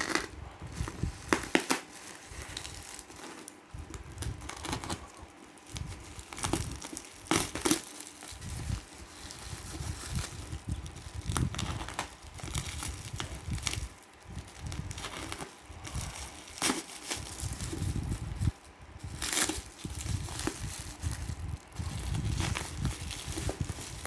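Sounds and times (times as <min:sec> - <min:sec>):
plastic packaging crinkling: 0:00.0 - 0:24.0.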